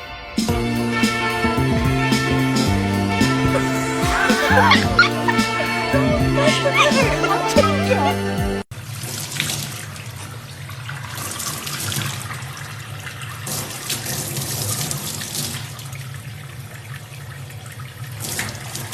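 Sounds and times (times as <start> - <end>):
running water rushing: 3.1 - 8.1.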